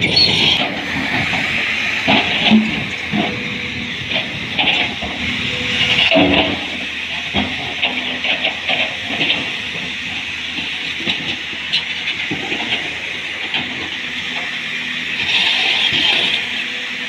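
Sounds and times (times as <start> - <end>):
excavator engine running: 0.0 - 17.0.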